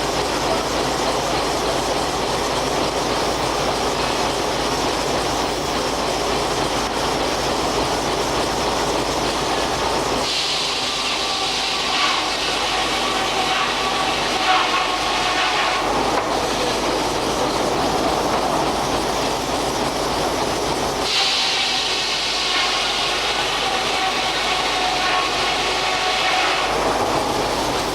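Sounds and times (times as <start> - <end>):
sawmill rumbling: 0.0 - 27.9
high saw whine: 9.4 - 27.9.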